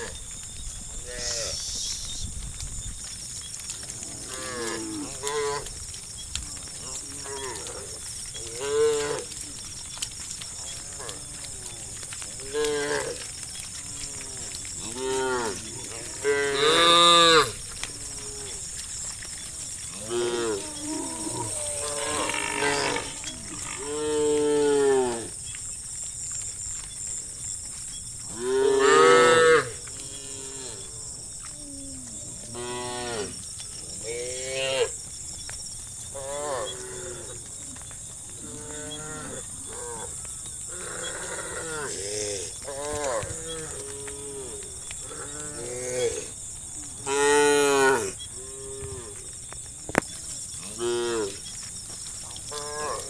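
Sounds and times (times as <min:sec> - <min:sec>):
steady high-pitched hiss: 0:00.0 - 0:53.0
cows mooing: 0:10.6 - 0:25.4, 0:28.3 - 0:31.0.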